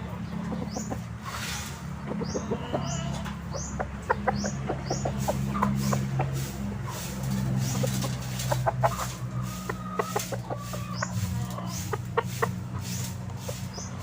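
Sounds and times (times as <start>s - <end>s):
chickens clucking: 0.0s - 14.0s.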